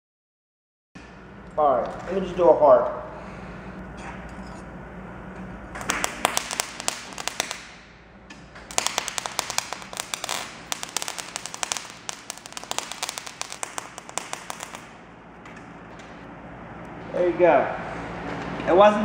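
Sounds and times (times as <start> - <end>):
welder arc crackling and popping: 5.8 - 7.8, 8.6 - 17.3.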